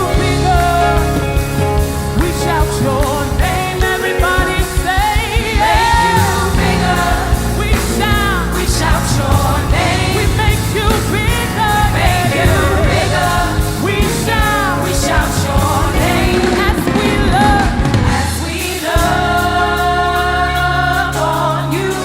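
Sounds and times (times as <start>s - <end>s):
band with drums: 0.0s - 22.0s
singers with vibrato: 0.0s - 22.0s.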